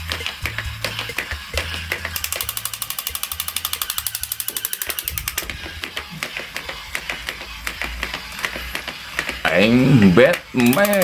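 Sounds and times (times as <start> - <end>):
irregular clicks and taps: 1.9 - 5.5, 10.6 - 11.0
rapid ratchet clicking: 2.1 - 5.5, 10.6 - 11.0.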